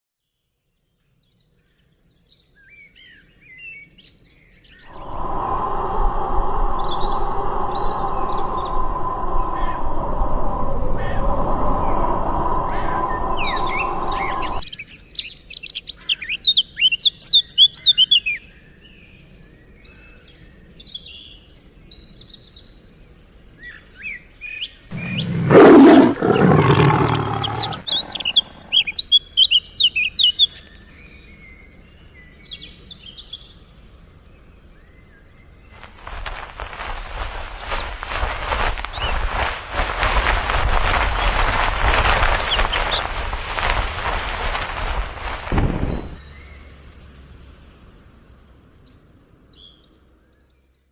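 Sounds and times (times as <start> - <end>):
loud low sound: 4.9 - 14.6
steady low-pitched sound: 4.9 - 14.6
songbirds chirping: 24.9 - 32.2, 33.0 - 50.7.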